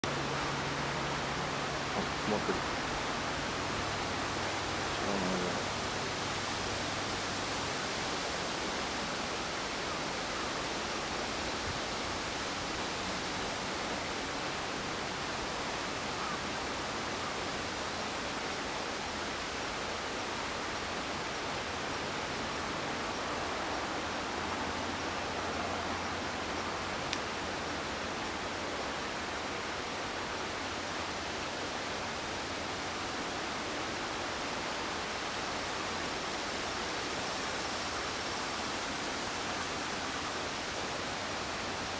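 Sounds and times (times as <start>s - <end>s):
steady hiss: 0.1s - 41.9s.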